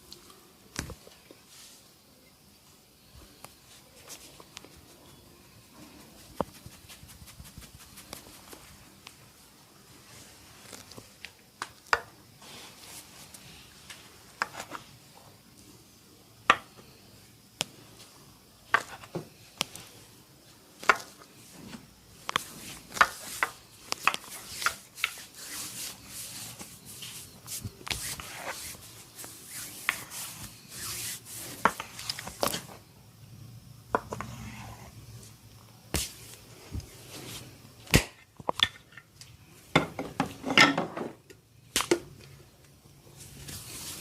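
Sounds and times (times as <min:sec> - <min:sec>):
hands rubbing on skin: 0:05.9 - 0:08.8, 0:24.3 - 0:31.6.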